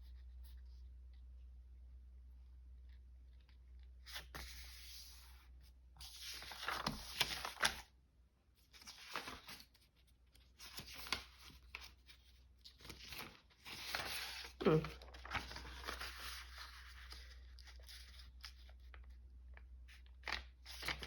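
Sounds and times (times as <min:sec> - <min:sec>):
paper sheets rustling: 0:04.0 - 0:05.4, 0:06.0 - 0:07.9, 0:08.7 - 0:19.1, 0:19.9 - 0:21.0.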